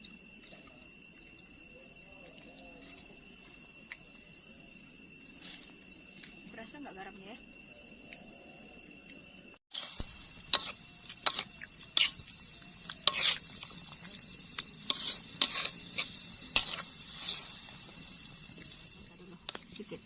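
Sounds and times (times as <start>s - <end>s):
insects chirring: 0.0s - 20.0s
metal spoon scraping in a pot: 9.8s - 17.8s.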